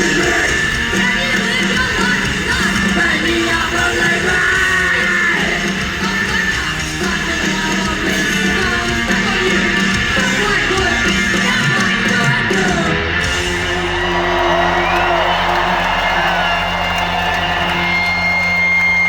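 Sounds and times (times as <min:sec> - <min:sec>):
person singing: 0:00.0 - 0:13.1
punk rock band playing live: 0:00.0 - 0:19.0.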